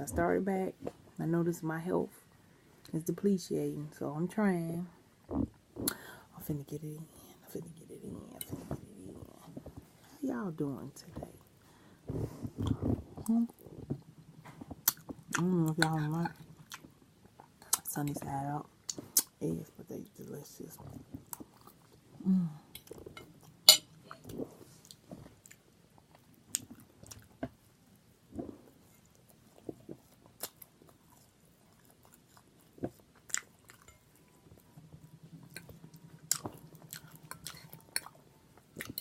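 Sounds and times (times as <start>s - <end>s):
person chewing and smacking: 12.5s - 17.9s, 21.2s - 22.0s, 22.8s - 39.0s
cutlery clinking on plate: 23.7s - 23.9s.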